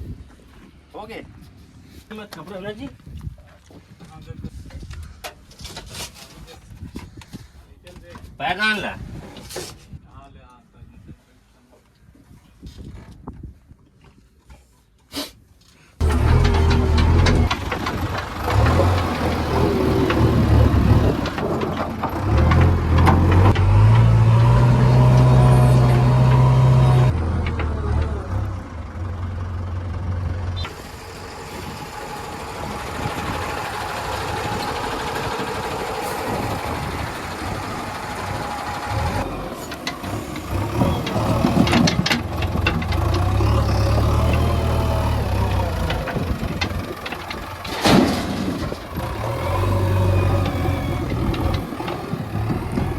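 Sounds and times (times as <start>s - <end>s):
diesel engine revving: 16.0s - 52.9s.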